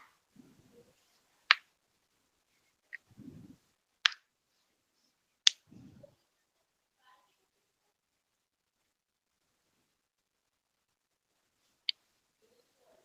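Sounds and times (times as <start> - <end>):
faint low rumble: 1.9 - 3.9, 5.6 - 7.0.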